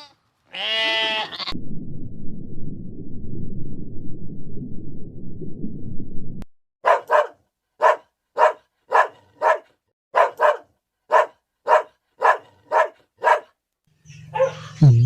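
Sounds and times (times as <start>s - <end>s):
low rumble: 1.6s - 6.5s
dog barking: 6.8s - 13.6s, 14.3s - 14.8s.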